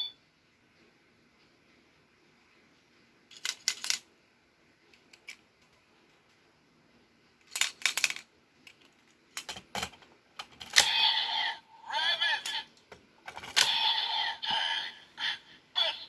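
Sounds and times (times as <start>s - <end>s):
plastic toy clicking and clattering: 3.3s - 4.1s, 7.4s - 11.0s, 13.3s - 13.8s.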